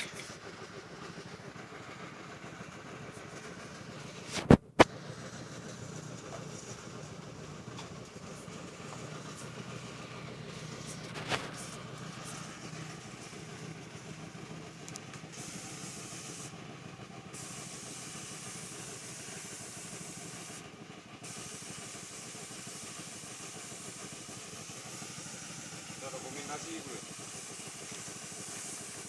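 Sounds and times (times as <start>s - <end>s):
low motor hum: 0.0s - 17.3s
paint spray gun hissing: 4.1s - 4.9s, 8.2s - 16.6s, 17.4s - 29.0s.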